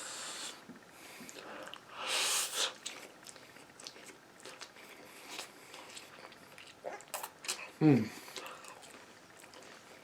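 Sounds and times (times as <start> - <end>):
person chewing food: 1.1 - 10.0
breathy sniff or slurp: 1.9 - 2.8.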